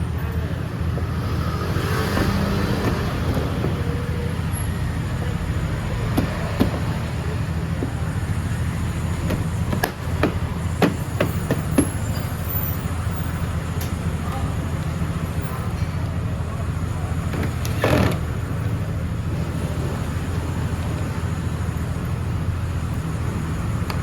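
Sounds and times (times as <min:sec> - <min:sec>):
sharp clicks and knocks: 0:00.9 - 0:04.2, 0:06.0 - 0:12.3, 0:17.2 - 0:18.4.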